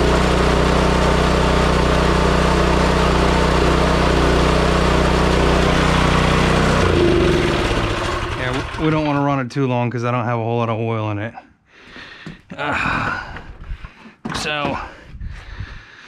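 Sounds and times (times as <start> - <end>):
snowblower engine running: 0.0 - 9.4.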